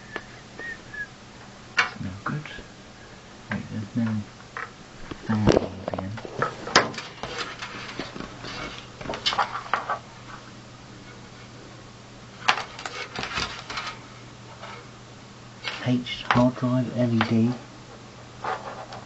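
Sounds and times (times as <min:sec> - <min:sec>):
faint steady hum: 0:00.0 - 0:19.0
cables rustling: 0:04.0 - 0:11.6, 0:12.4 - 0:14.9.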